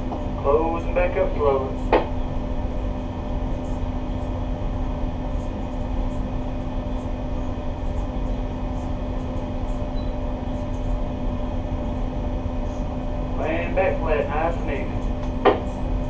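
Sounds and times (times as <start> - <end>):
boat engines droning: 0.0 - 2.6, 11.7 - 16.0.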